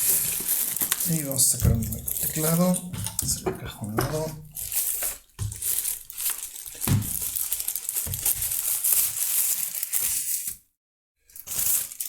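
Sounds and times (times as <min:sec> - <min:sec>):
plastic packaging crinkling: 0:00.0 - 0:10.6, 0:11.3 - 0:12.0.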